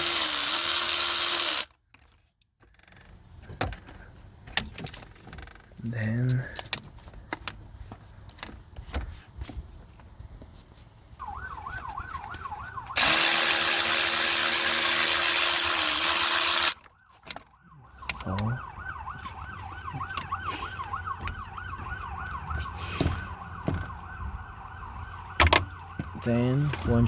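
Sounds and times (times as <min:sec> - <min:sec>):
loud mechanical whir: 0:00.0 - 0:01.7, 0:13.0 - 0:16.8
emergency siren wailing: 0:11.2 - 0:13.0, 0:16.7 - 0:27.0.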